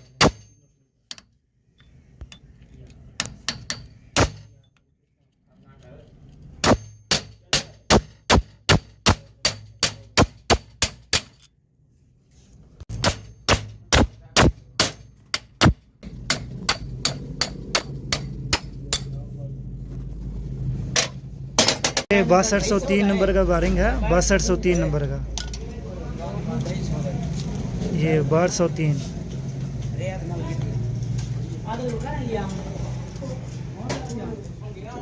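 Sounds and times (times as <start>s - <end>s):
hammer striking metal: 0.0s - 2.6s, 3.2s - 4.7s, 6.6s - 11.5s, 12.9s - 19.3s.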